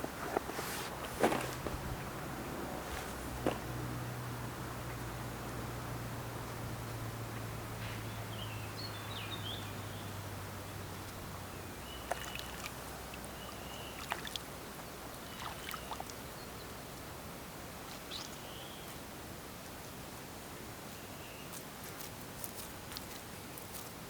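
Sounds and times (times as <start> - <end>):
low hum: 0.9 - 7.2.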